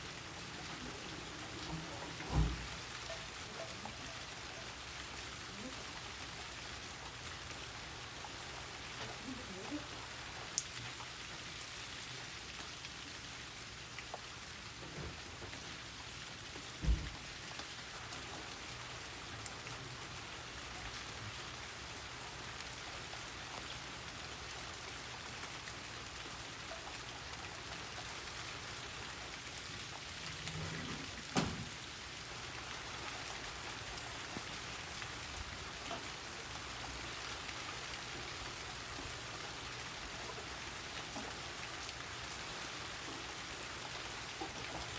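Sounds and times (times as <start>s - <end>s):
steady rain: 0.0s - 44.9s
raindrops ticking: 0.2s - 11.2s, 22.4s - 44.9s.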